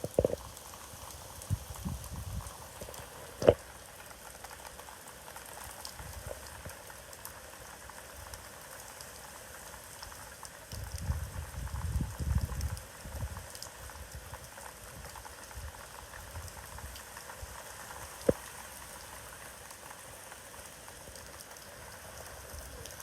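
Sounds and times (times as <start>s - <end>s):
steady rain falling: 0.0s - 23.0s
wind gusts on microphone: 1.4s - 2.6s, 10.7s - 13.4s.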